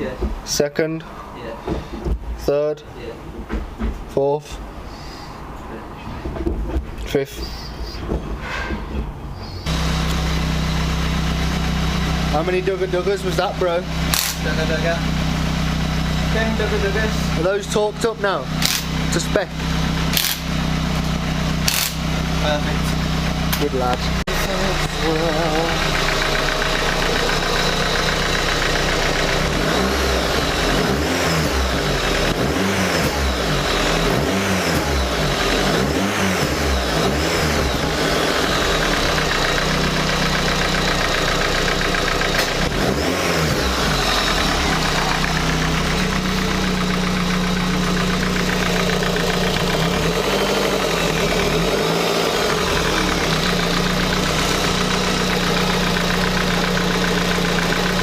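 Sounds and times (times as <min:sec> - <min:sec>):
car engine revving: 0:09.6 - 0:58.0.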